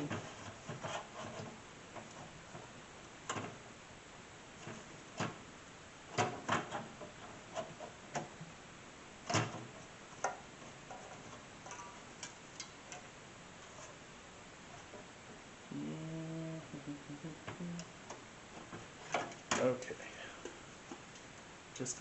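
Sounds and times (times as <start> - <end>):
computer parts clicking and knocking: 6.1 - 8.4, 9.2 - 13.1.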